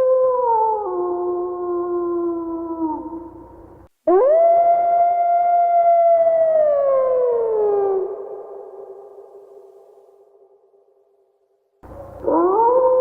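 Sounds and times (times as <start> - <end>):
wolf howling: 12.2 - 13.0.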